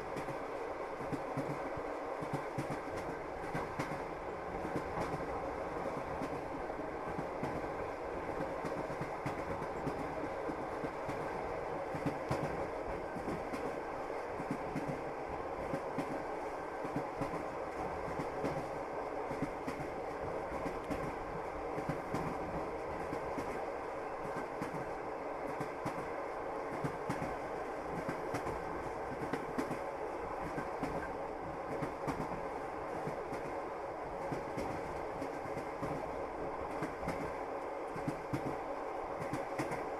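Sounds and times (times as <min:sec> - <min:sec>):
train rumbling along track: 0:00.0 - 0:39.9.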